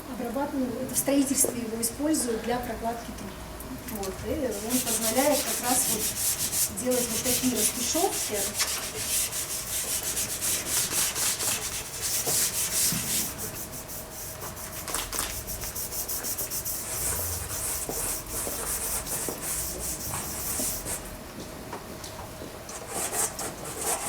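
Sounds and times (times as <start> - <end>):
scratchy rubbing on paper: 4.5 - 21.0, 22.9 - 24.0.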